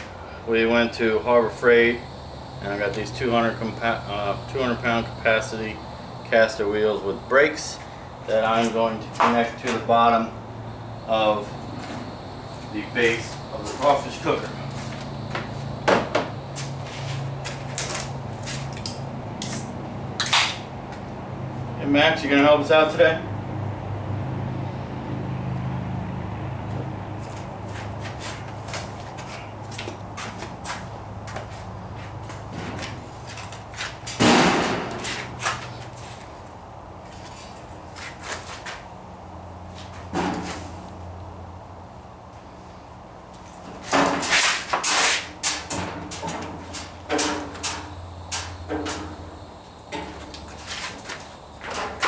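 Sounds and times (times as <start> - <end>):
steady low hum: 0.0 - 52.0.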